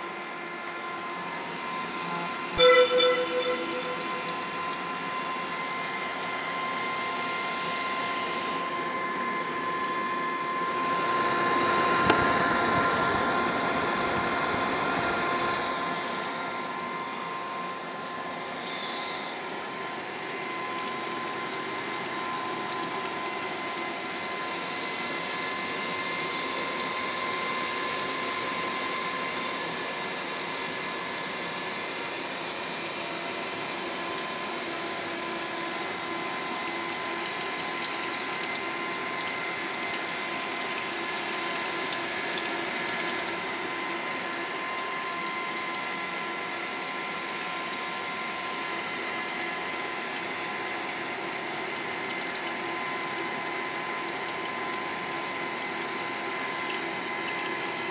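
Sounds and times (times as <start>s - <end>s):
computer cooling fans whirring: 0.0s - 18.6s
steady tones: 2.6s - 4.8s.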